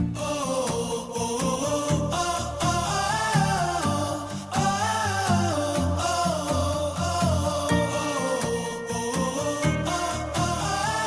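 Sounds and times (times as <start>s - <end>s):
song with steady beat and bass: 7.7s - 11.0s.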